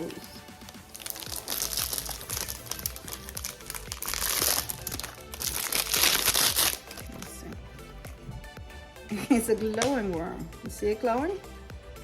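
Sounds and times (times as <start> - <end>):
background music: 0.0 - 12.0
plastic packaging crinkling: 0.6 - 7.4.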